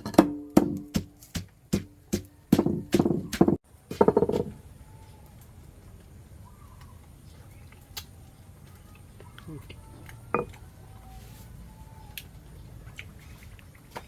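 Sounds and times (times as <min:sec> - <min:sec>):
knife chopping on wooden block: 0:00.1 - 0:04.5.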